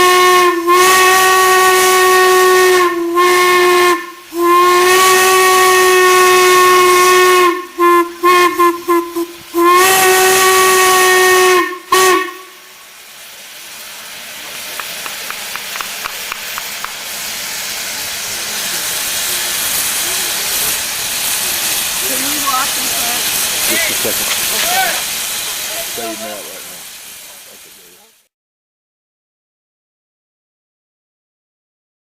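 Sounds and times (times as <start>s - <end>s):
steam whistle blasts: 0.0s - 12.8s
steam hissing: 0.0s - 28.3s.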